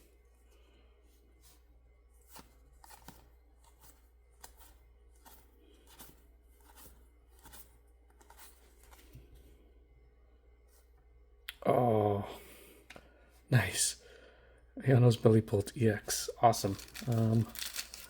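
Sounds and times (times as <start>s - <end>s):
trading cards swishing: 16.6s - 18.0s.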